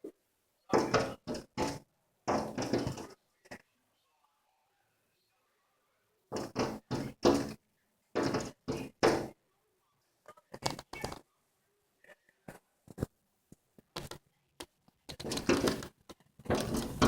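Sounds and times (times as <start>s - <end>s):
bird tapping on window glass: 0.7s - 3.1s, 6.3s - 7.6s, 8.2s - 9.4s, 15.1s - 15.9s, 16.5s - 17.0s.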